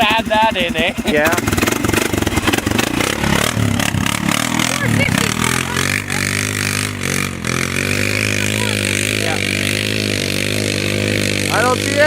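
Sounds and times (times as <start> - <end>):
engine idling: 0.0 - 12.0.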